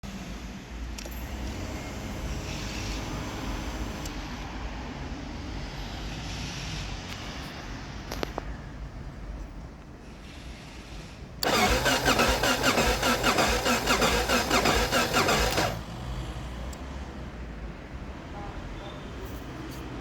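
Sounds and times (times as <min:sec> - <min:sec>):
sharp clicks: 0:11.4 - 0:15.8
starter motor cranking engine: 0:11.4 - 0:15.9.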